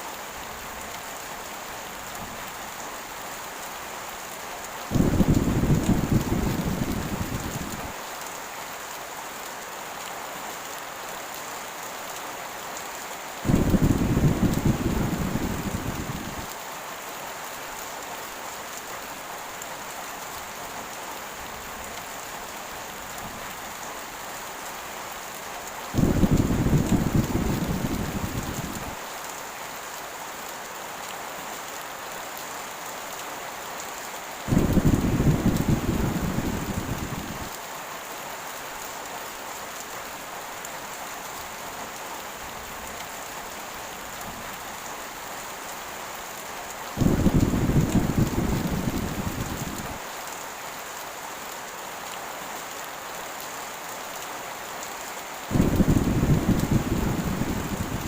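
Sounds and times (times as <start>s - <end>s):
heavy rain: 0.0s - 58.0s
rolling thunder: 4.9s - 7.9s, 13.5s - 16.5s, 26.0s - 28.9s, 34.5s - 37.5s, 47.0s - 49.9s, 55.5s - 58.0s.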